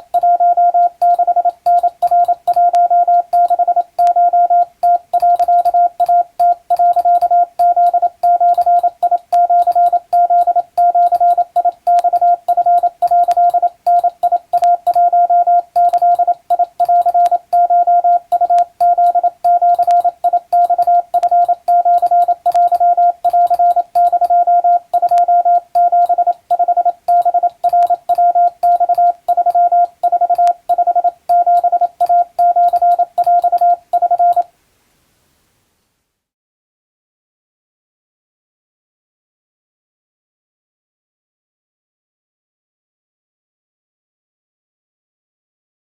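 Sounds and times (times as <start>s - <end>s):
morse code beeps: 0.0s - 34.5s.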